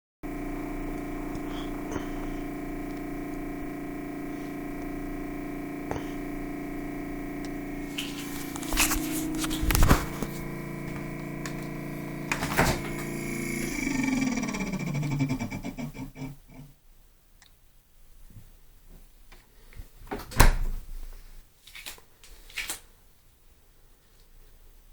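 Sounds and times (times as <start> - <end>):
refrigerator humming: 0.2 - 16.8.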